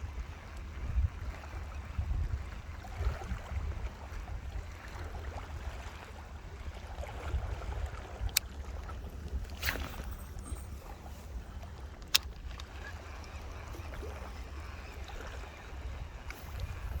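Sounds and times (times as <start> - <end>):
wind buffeting microphone: 0.0 - 5.8, 6.4 - 17.0
faint ticks: 9.3 - 17.0.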